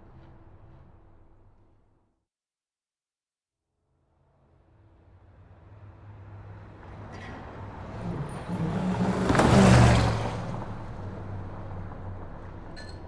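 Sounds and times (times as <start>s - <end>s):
sports car speeding past: 6.0s - 12.3s.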